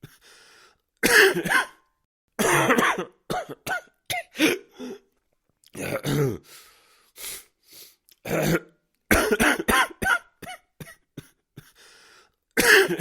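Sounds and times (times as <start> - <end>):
breath: 0.0 - 0.9, 6.4 - 8.0, 11.6 - 12.4
man coughing: 1.0 - 1.8, 2.4 - 5.0, 5.8 - 6.5, 8.3 - 11.8, 12.6 - 13.0.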